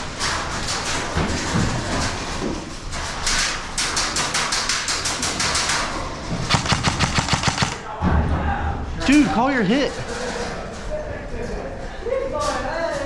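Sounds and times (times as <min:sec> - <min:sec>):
airsoft guns firing bursts: 0:06.4 - 0:07.9.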